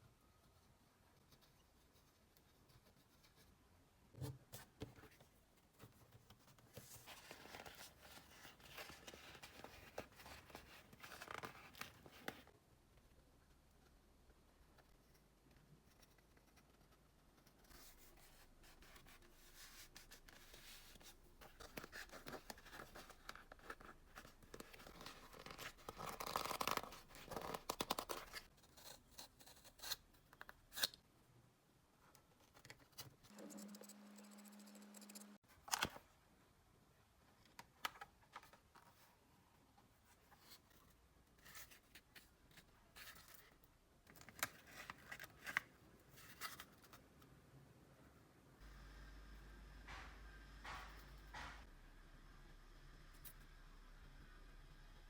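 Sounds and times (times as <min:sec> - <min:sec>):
steady low hum: 0:48.6 - 0:55.0.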